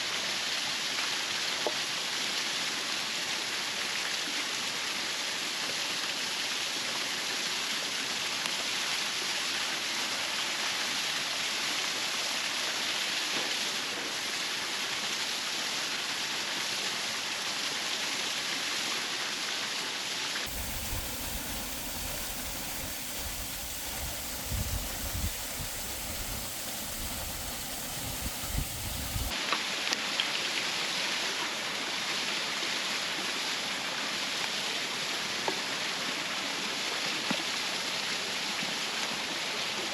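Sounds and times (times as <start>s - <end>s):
waterfall rushing: 20.5s - 29.3s.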